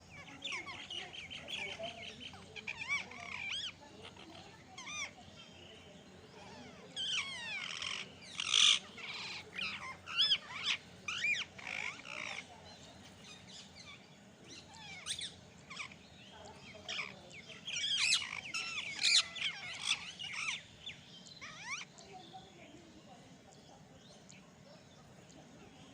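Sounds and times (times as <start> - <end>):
parrots screeching and squawking: 0.1 - 5.4, 6.4 - 12.5, 13.1 - 16.0, 16.6 - 22.0.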